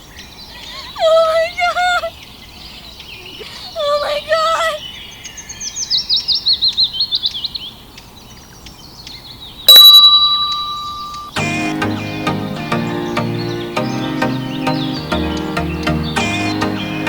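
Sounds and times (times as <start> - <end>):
bird chirps falling in pitch: 9.6 - 17.0
bird wavering call: 9.7 - 17.0.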